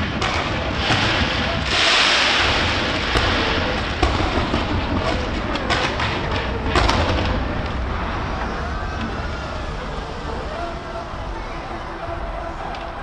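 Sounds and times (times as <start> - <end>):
fireworks bangs: 0.0 - 10.6
low rumble: 0.0 - 13.0.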